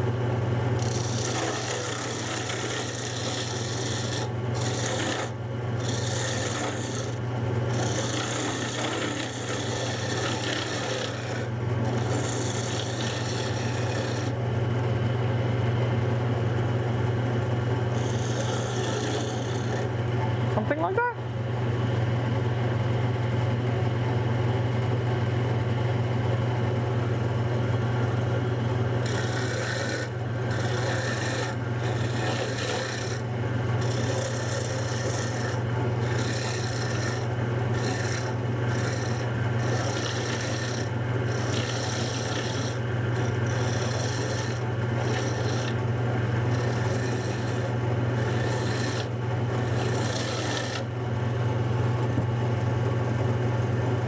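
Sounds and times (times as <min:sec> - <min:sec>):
tool rasping on spinning wood: 0:00.7 - 0:14.6, 0:17.8 - 0:20.8, 0:28.1 - 0:51.0
lathe motor humming: 0:00.7 - 0:15.6, 0:17.8 - 0:20.6, 0:28.0 - 0:51.2.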